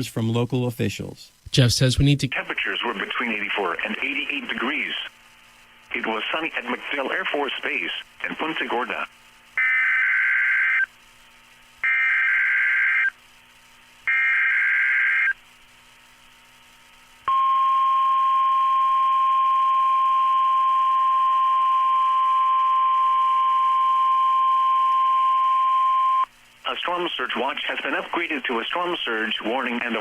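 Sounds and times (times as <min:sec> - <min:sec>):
buzzy data bursts: 0:01.5 - 0:15.8
steady warning alarm tone: 0:09.6 - 0:10.9, 0:11.8 - 0:13.2, 0:14.1 - 0:15.4, 0:17.3 - 0:26.3.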